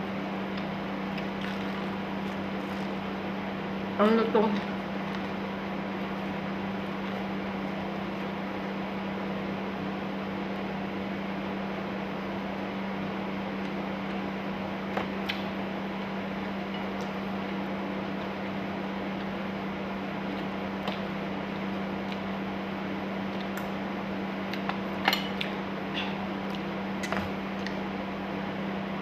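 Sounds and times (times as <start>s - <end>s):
machine hum with low drone: 0.0s - 29.0s.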